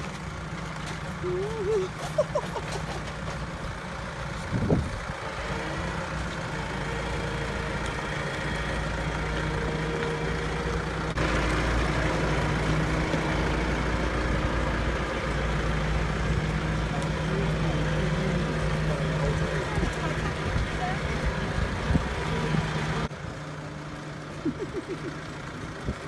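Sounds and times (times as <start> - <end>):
tractor engine running: 0.0 - 26.0.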